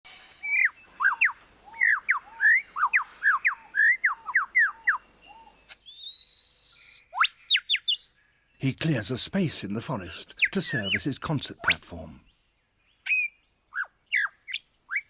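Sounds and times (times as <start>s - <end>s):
bird singing whistled notes: 0.1s - 8.6s, 10.3s - 15.0s
bird whistle ending in whip-crack: 5.7s - 7.8s.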